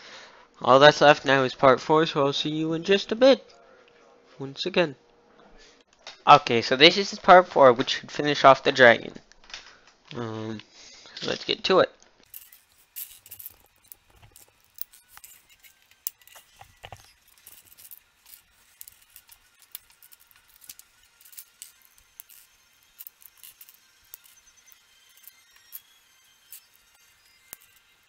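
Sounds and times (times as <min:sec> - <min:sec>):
plastic bricks clicking: 0:12.3 - 0:28.0.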